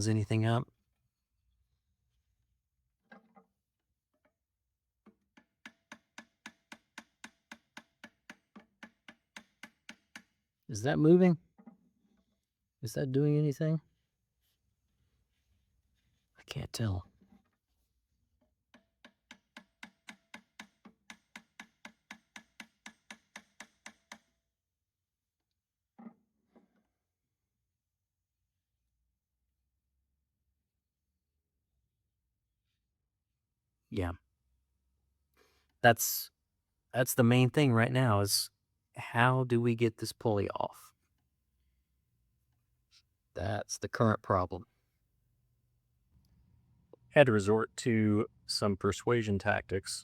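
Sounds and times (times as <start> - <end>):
metallic tapping on pulley: 18.7 - 24.4.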